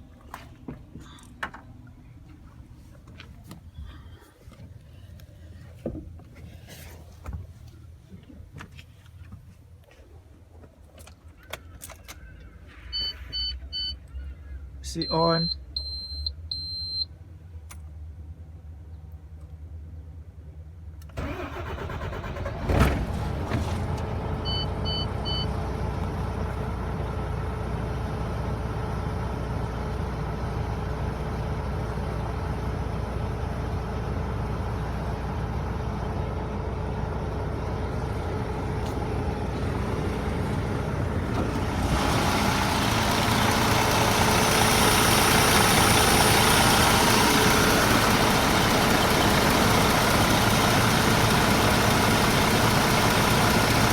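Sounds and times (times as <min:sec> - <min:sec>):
truck starter cranking: 0:21.1 - 0:24.7
diesel engine running: 0:21.1 - 0:53.9.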